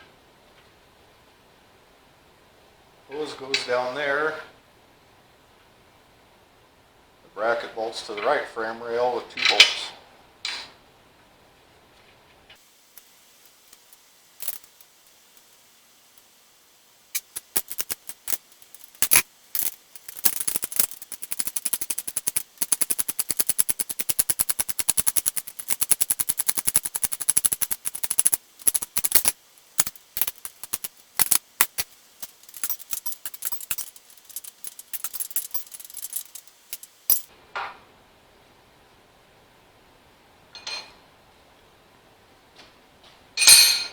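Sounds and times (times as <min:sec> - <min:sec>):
ratchet wrench clicking: 0:13.7 - 0:14.8, 0:17.2 - 0:37.3.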